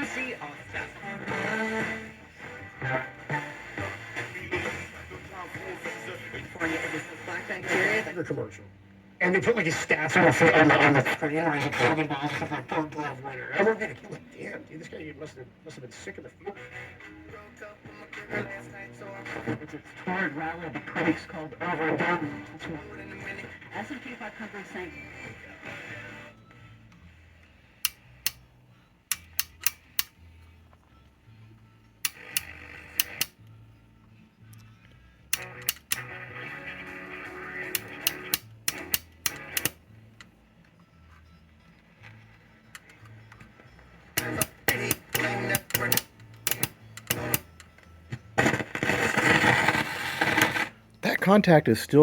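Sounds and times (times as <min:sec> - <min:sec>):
radio music with bass line: 0:00.0 - 0:52.0
sharp clicks: 0:29.1 - 0:30.1, 0:32.0 - 0:33.4, 0:35.3 - 0:36.1, 0:37.7 - 0:39.8, 0:44.2 - 0:47.7.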